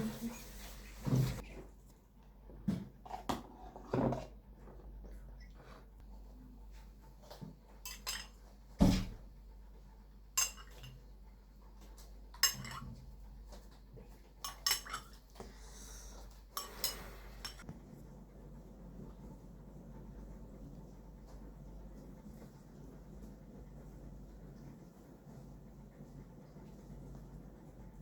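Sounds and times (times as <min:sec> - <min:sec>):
cutlery and dishes clinking: 0:07.9 - 0:08.4, 0:10.4 - 0:11.0, 0:12.4 - 0:13.0, 0:14.4 - 0:15.2, 0:16.6 - 0:17.6.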